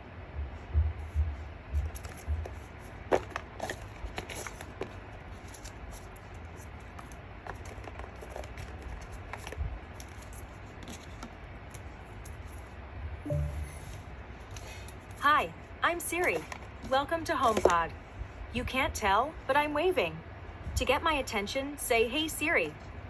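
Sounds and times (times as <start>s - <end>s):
steady low hum: 0.0s - 3.6s, 12.7s - 16.2s.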